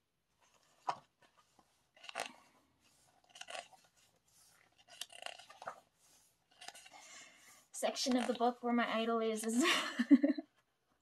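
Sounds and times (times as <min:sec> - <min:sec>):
glossy pages rustling: 0:00.3 - 0:08.6.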